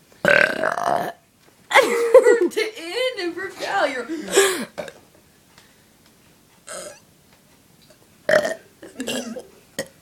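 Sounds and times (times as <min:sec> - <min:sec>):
person burping: 0:00.2 - 0:02.1, 0:04.2 - 0:05.0, 0:06.7 - 0:07.0, 0:08.3 - 0:10.0.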